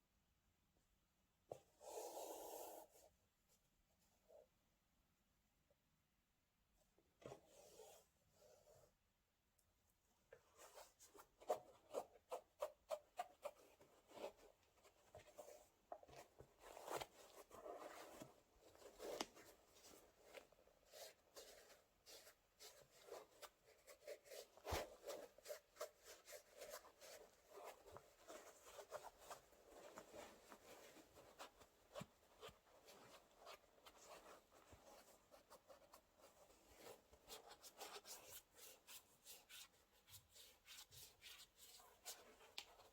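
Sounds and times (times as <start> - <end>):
faint rustling of packaging: 9.9 - 42.9.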